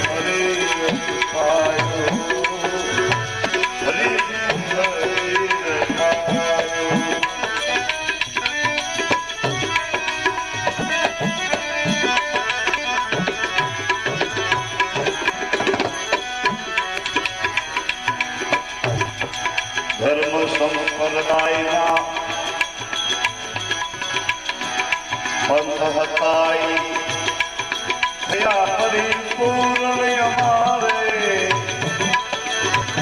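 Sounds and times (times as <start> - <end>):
person singing devotional song: 0.0 - 13.0, 18.9 - 24.4, 25.2 - 33.0
tabla playing: 0.0 - 33.0.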